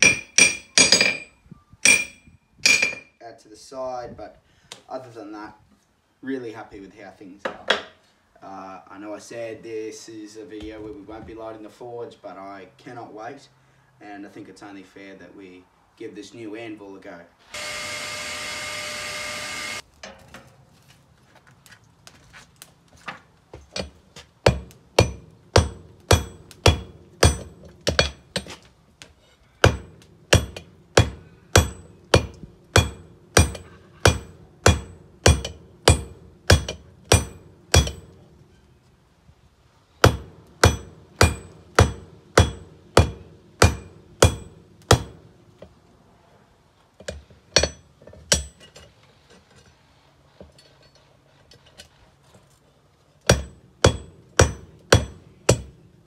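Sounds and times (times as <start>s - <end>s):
hammer striking ringing anvil: 0.0s - 3.1s.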